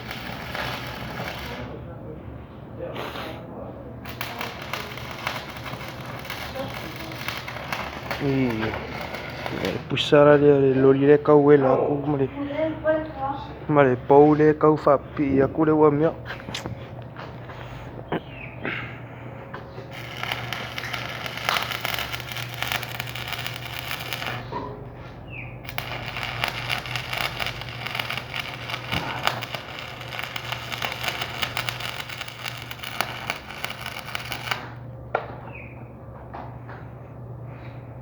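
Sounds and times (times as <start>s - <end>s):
welding arc crackling: 0.0s - 1.8s, 4.0s - 9.9s, 19.9s - 24.5s, 25.6s - 34.8s
steady low hum: 0.0s - 38.0s.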